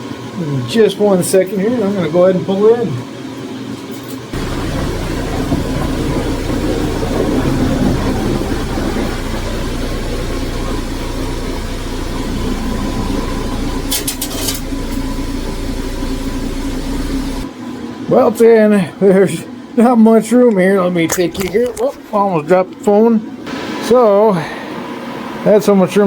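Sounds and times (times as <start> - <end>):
car engine rumbling: 4.4 - 17.5.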